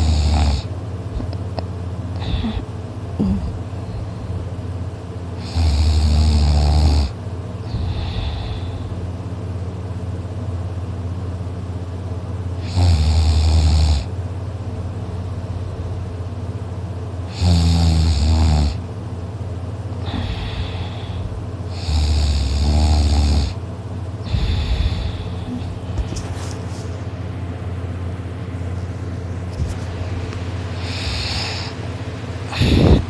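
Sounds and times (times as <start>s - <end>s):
man snoring loudly: 0.0s - 0.7s, 5.4s - 8.7s, 12.6s - 14.1s, 17.3s - 18.8s, 20.0s - 23.6s, 30.8s - 31.8s, 32.5s - 33.0s
soft breaths: 2.2s - 4.5s, 7.7s - 9.1s, 20.0s - 21.4s, 24.2s - 27.1s.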